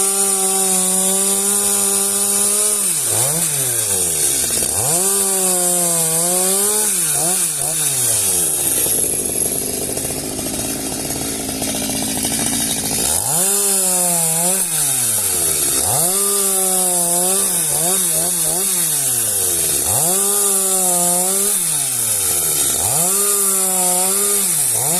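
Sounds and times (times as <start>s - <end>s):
chainsaw engine revving: 0.0s - 24.9s.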